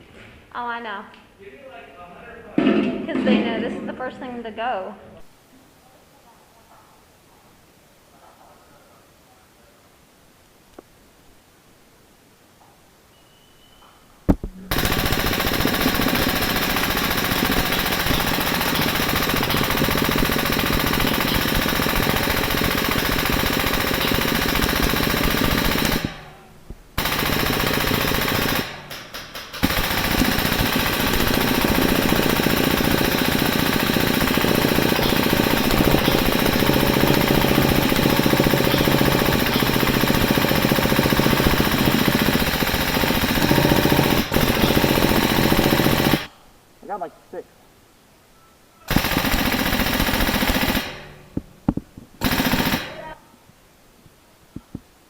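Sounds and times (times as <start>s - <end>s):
airsoft machine gun firing bursts: 14.7s - 26.4s, 27.0s - 46.3s, 48.9s - 51.4s, 52.2s - 53.2s.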